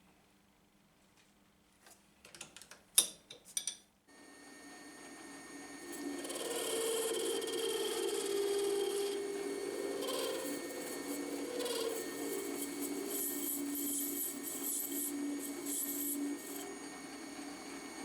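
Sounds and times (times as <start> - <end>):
metal lathe running: 4.2 - 18.0
cutting tool scraping metal: 5.8 - 18.0.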